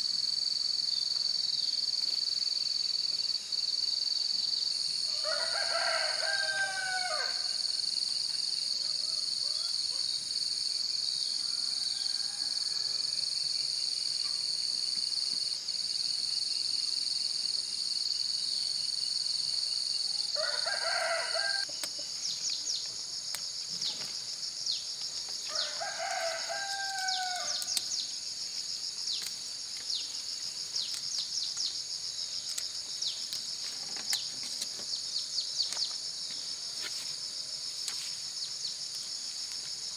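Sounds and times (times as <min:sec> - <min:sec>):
insect trill and chirping: 0:00.0 - 0:39.9
rooster crowing: 0:05.1 - 0:07.6, 0:11.4 - 0:13.2, 0:20.3 - 0:21.7, 0:25.5 - 0:28.0.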